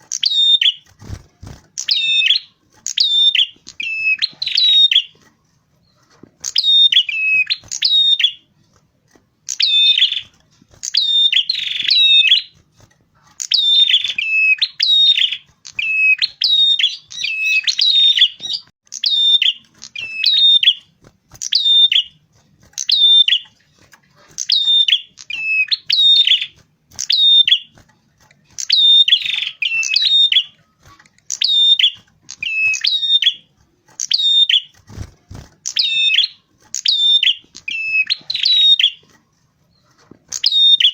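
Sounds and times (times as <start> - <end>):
warbler chattering song: 0.0 - 8.5, 9.4 - 40.9.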